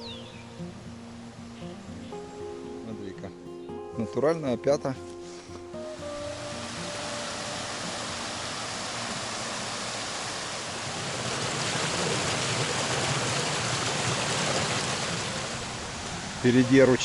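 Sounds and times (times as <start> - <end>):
mountain water rushing: 5.3 - 17.0.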